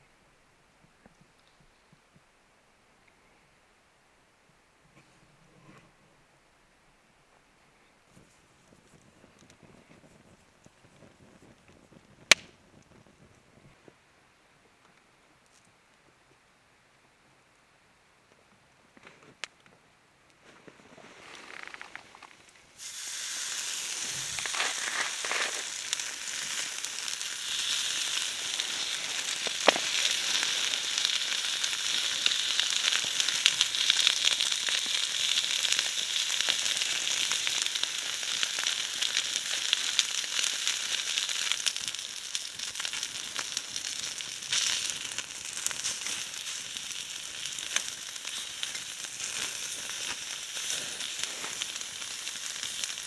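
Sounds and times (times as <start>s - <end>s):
fat popping: 11.4s - 13.0s, 27.4s - 30.6s
food sizzling in a hot pan: 22.8s - 53.0s.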